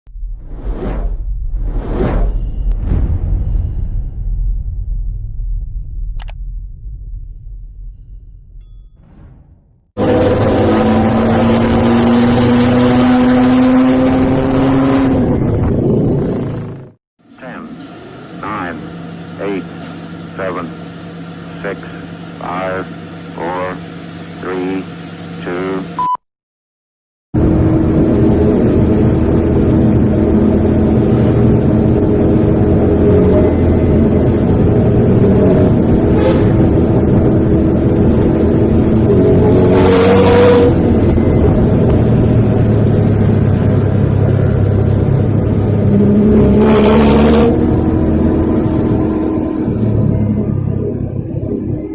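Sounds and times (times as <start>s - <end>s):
bus engine droning loudly: 10.0s - 26.0s, 27.4s - 51.9s.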